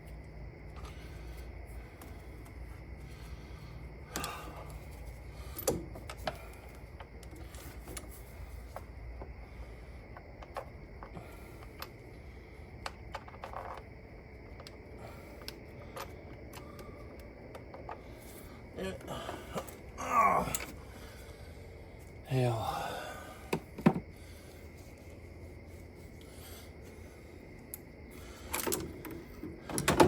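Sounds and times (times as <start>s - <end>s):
low steady hum: 0.0s - 30.0s.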